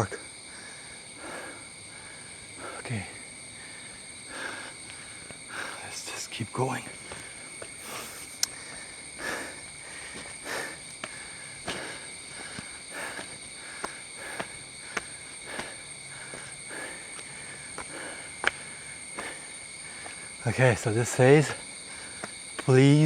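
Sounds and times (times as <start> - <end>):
high-pitched insect drone: 0.0 - 23.0
footsteps on a trail: 4.2 - 5.8, 6.6 - 20.4, 21.4 - 23.0
sharp ticks: 8.4 - 8.6.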